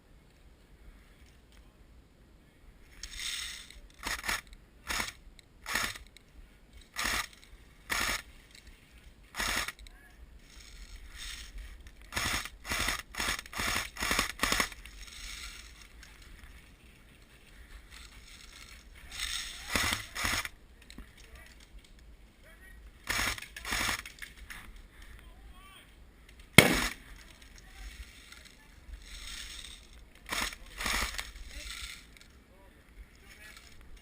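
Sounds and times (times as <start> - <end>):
electric airsoft guns firing: 7.0 - 8.2, 12.1 - 14.8, 19.2 - 20.5, 26.6 - 27.2.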